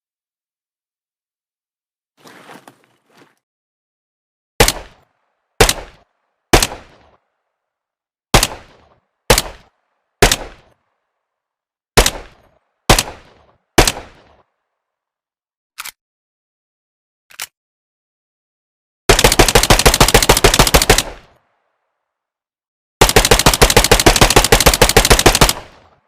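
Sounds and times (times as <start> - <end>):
submachine gun single shots: 4.6 - 5.0, 5.6 - 7.1, 8.3 - 10.8, 23.0 - 25.8.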